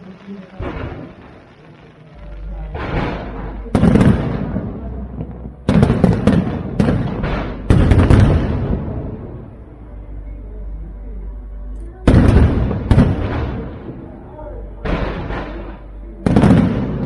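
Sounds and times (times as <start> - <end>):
firework shells bursting: 2.7 - 9.3.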